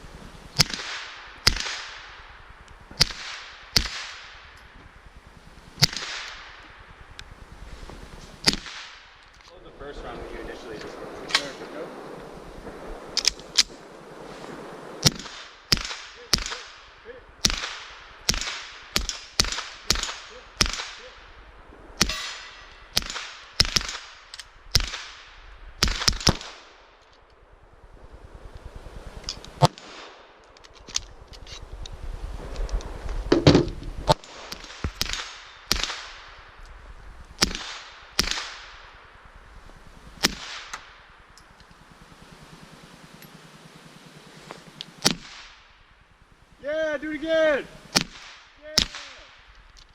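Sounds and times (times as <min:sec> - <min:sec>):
suppressed pistol shots: 0:08.4 - 0:09.1, 0:15.0 - 0:21.3, 0:22.0 - 0:26.7, 0:37.4 - 0:38.9, 0:45.0 - 0:45.6, 0:47.9 - 0:49.3.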